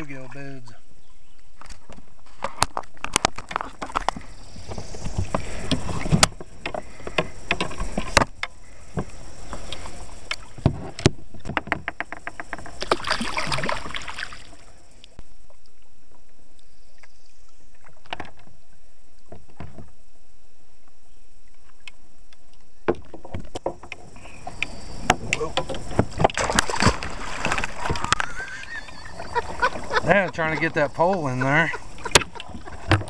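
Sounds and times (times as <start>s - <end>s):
paddle strokes swishing water: 2.2s - 11.5s, 12.3s - 16.2s, 22.4s - 33.0s
steady hiss: 3.8s - 33.0s.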